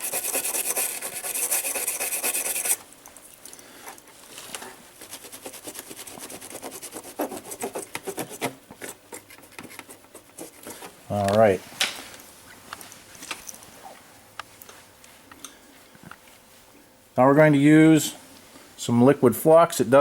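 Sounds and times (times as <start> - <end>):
toothbrush scrubbing circuit board: 0.0 - 2.8.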